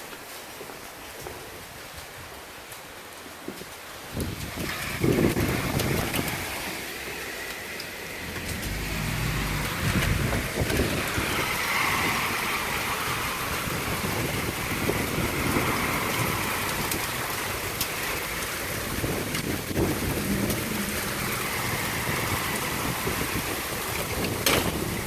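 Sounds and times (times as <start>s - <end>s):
steady rain: 0.0s - 25.0s
low thunder rumble: 8.0s - 25.0s.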